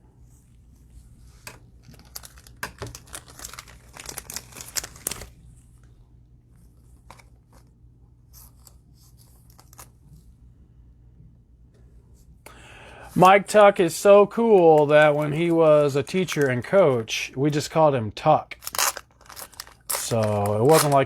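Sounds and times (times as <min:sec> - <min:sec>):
plastic wrapper crinkling and tearing: 0:01.8 - 0:05.9, 0:14.4 - 0:16.7, 0:18.5 - 0:21.0.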